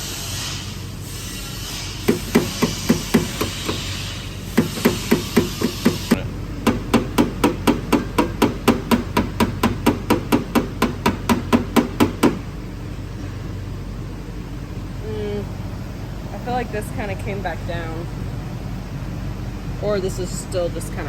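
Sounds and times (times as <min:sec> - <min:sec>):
hammer tapping on sheet metal: 0:02.1 - 0:03.9, 0:04.5 - 0:12.5.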